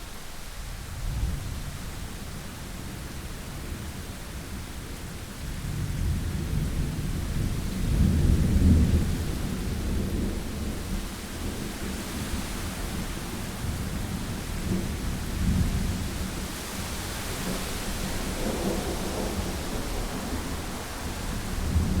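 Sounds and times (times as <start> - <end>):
steady rain: 0.0 - 22.0
low rolling thunder: 0.8 - 22.0.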